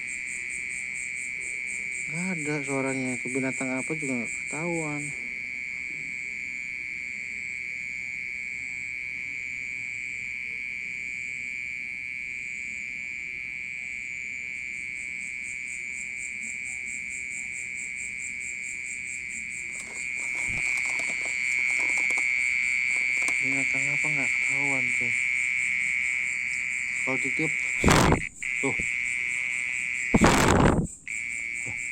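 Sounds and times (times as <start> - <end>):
insect buzzing trill: 19.2 - 31.9.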